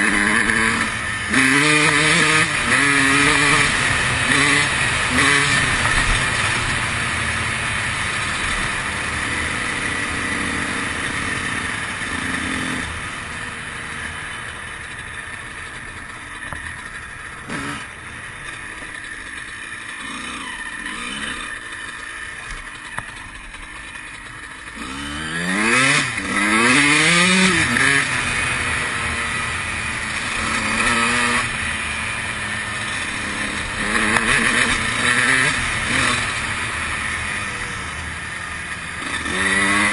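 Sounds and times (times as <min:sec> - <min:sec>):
two-stroke motorcycle engine revving: 0:00.0 - 0:39.9.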